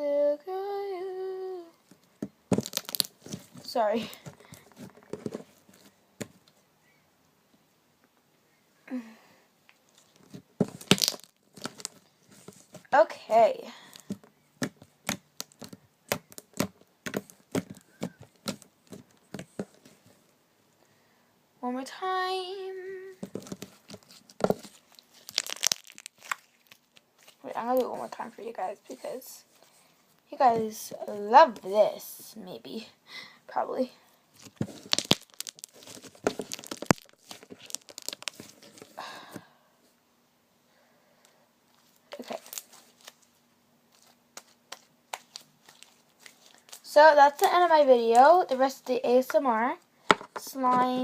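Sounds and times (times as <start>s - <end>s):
slime popping and crackling: 2.5s - 5.3s, 10.6s - 12.0s, 13.9s - 19.6s, 23.2s - 27.9s, 34.4s - 38.9s, 44.4s - 48.3s
slime clicking and popping: 2.6s - 3.1s, 10.8s - 12.0s, 25.2s - 26.4s, 34.8s - 35.8s.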